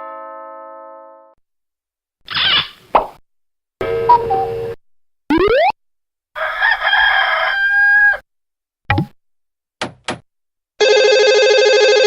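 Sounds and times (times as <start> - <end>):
rooster crowing: 6.4 - 8.2.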